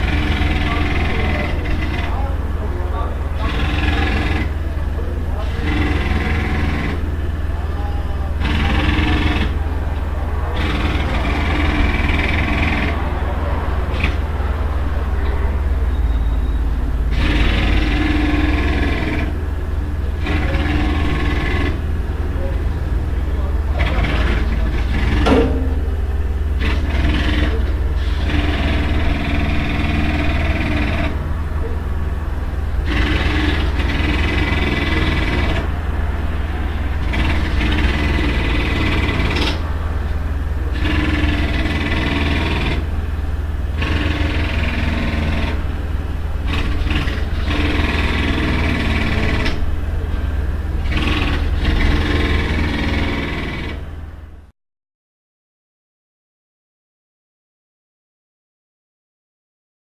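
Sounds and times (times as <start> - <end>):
jackhammer hammering: 0.0 - 54.1
steady low rumble: 25.3 - 26.7.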